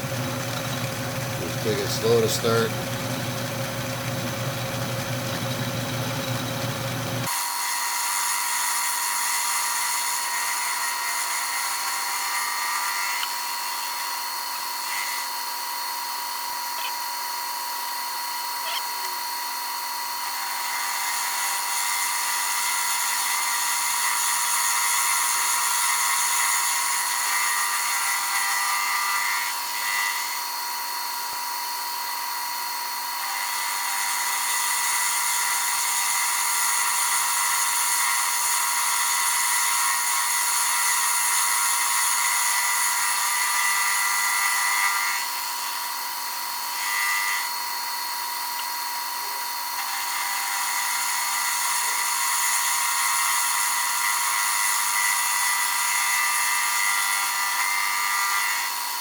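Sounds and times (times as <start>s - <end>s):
hissing milling cut: 0.0s - 13.4s
lathe motor whine: 0.0s - 59.0s.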